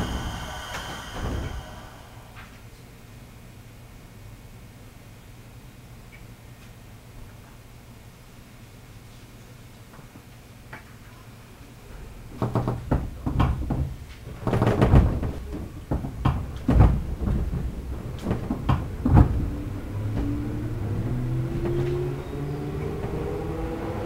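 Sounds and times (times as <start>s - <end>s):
train traction motor whine: 0.0s - 2.6s
heavy clunks and knocks: 12.4s - 19.5s.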